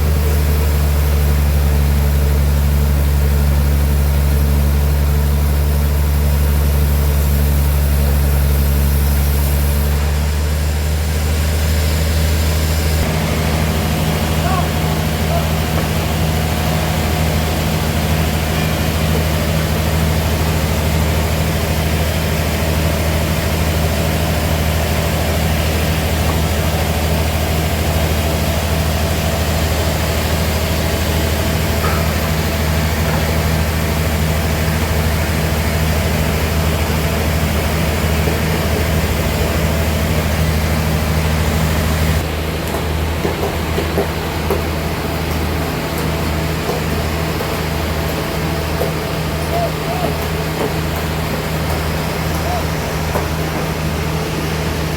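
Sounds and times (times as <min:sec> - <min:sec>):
sawmill machinery humming: 0:00.0 - 0:54.9.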